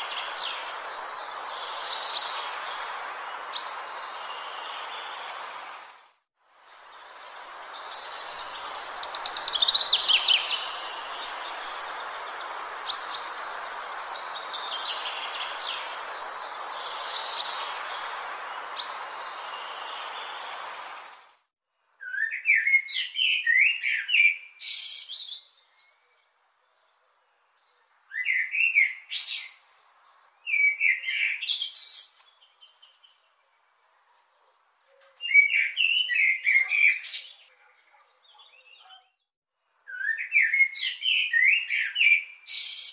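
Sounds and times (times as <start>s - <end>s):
steady background hiss: 0.0s - 21.3s
songbirds chirping and singing: 7.7s - 21.2s, 34.3s - 39.3s.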